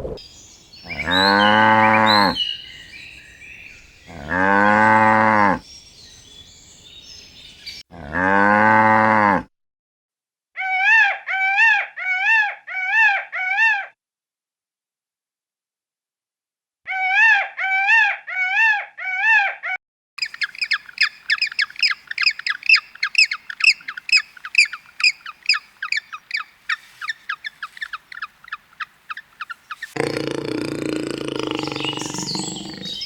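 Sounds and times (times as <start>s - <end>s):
short high animal calls: 0.9s - 2.6s, 21.3s - 33.0s
cow mooing: 1.0s - 2.4s, 4.1s - 5.6s, 8.0s - 9.4s, 30.0s - 33.0s.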